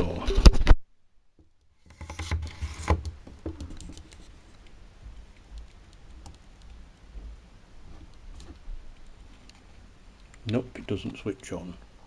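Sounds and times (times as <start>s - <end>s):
faint plastic clicks: 8.0s - 11.2s.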